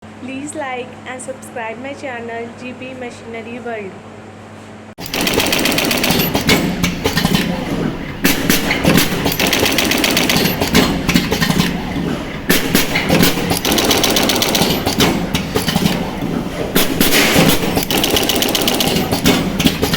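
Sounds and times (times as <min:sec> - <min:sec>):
machine clattering: 0:05.0 - 0:19.9.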